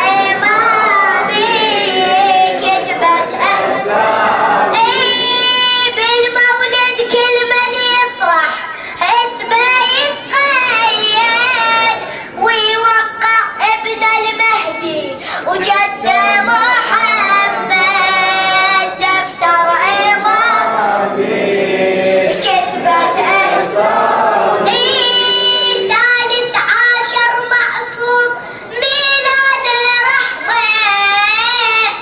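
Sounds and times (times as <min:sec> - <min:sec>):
person chanting devotional song: 0:00.0 - 0:08.3, 0:09.4 - 0:12.4, 0:14.7 - 0:26.8.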